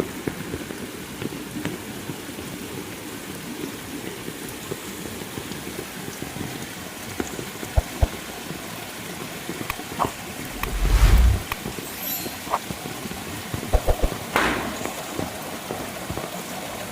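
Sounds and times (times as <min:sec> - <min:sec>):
heavy rain falling: 0:00.0 - 0:10.6, 0:11.4 - 0:16.9
loud low whoosh: 0:10.5 - 0:11.6.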